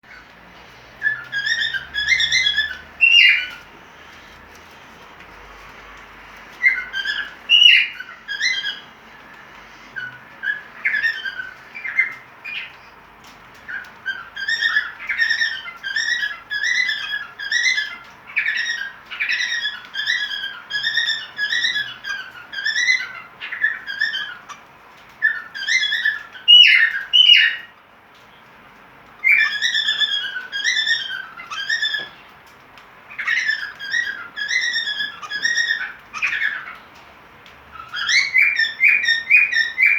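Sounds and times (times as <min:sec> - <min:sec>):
cockatiel whistling: 0:01.0 - 0:03.6, 0:06.6 - 0:12.7, 0:33.2 - 0:36.7, 0:37.8 - 0:39.9.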